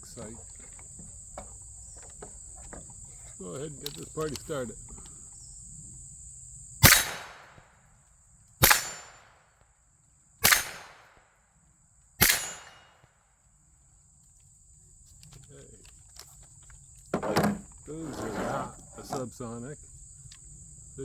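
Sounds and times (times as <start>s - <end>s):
suppressed gunshots: 6.8s - 7.7s, 8.6s - 9.4s, 10.4s - 11.2s, 12.2s - 13.0s.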